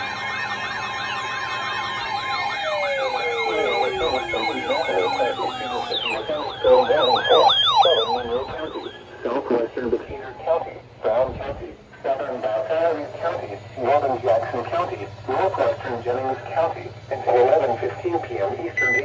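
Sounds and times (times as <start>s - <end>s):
electronic sirens yelping and wailing: 0.0s - 10.4s.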